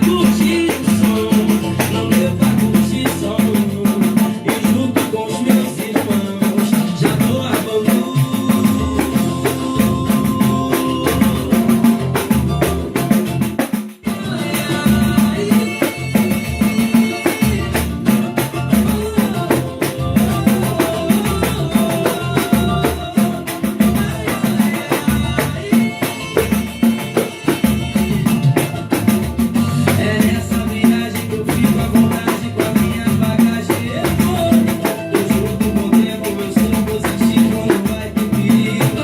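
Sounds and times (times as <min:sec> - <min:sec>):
bass groove: 0:00.0 - 0:39.0
drums: 0:00.0 - 0:39.0.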